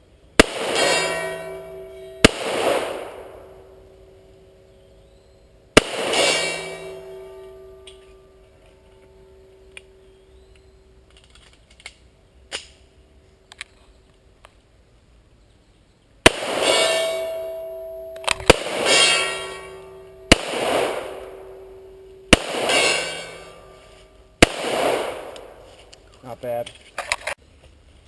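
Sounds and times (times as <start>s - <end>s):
rolling gunshot echo: 0.4s - 3.7s, 5.8s - 8.1s, 16.2s - 23.7s, 24.4s - 25.7s
steel gong ringing: 0.7s - 2.4s, 6.1s - 10.3s, 16.6s - 24.3s
handgun shots: 20.3s - 21.6s, 22.3s - 23.6s.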